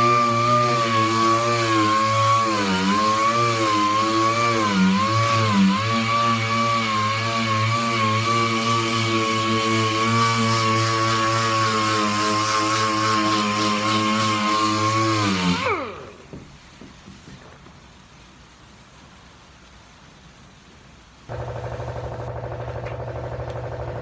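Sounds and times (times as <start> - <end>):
power tool running at high speed: 0.0 - 16.1, 21.3 - 23.7
machine humming: 21.3 - 24.0.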